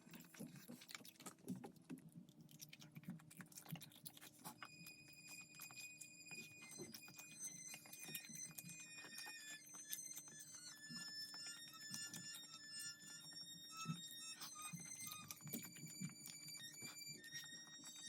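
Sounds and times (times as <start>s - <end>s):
soft tinkling music: 4.4s - 18.0s.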